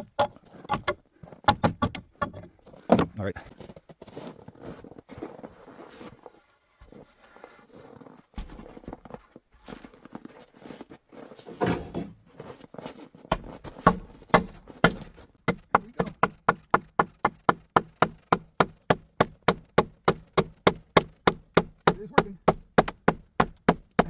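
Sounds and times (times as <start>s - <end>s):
sharp wooden knocks: 0.0s - 3.2s, 13.3s - 24.0s
scraping of wooden pole: 0.0s - 16.3s.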